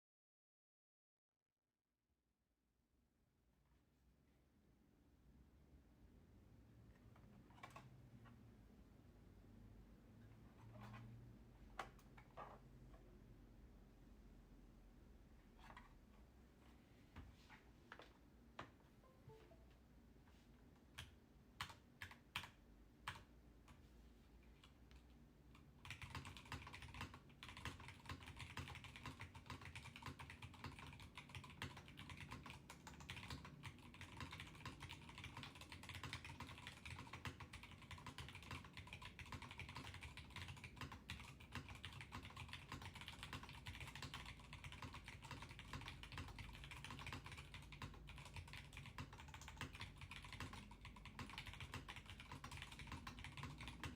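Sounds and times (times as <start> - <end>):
typing on mechanical keyboard: 7.5 - 8.0, 21.0 - 23.3, 25.5 - 53.9.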